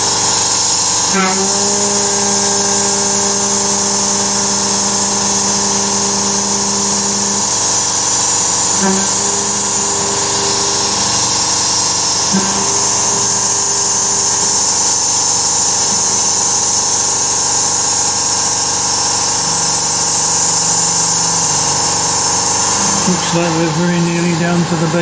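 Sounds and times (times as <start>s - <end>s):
air assist hiss: 0.0s - 25.0s
cnc mill cutting: 0.0s - 25.0s.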